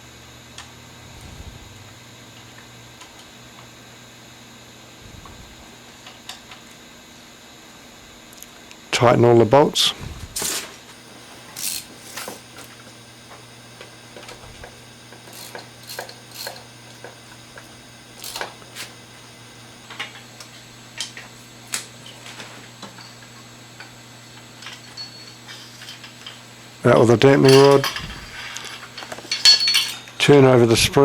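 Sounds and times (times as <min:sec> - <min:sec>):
faint steady hum: 0:00.0 - 0:31.0
hand tools tapping metal: 0:28.9 - 0:30.1.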